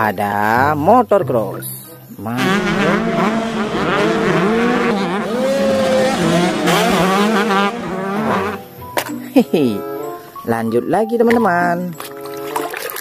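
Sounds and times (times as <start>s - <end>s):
motocross bike engine revving: 2.3s - 8.7s.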